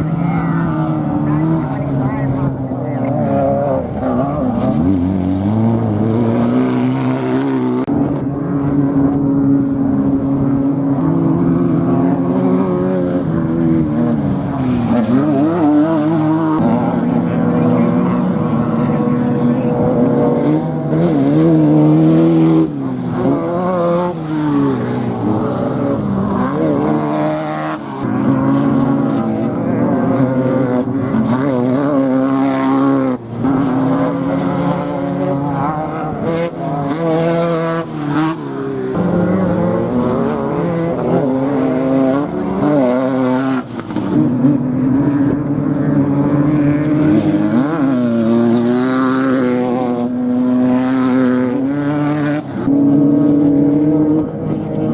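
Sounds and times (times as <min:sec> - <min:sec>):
race vehicle engine revving: 0:00.0 - 0:54.9.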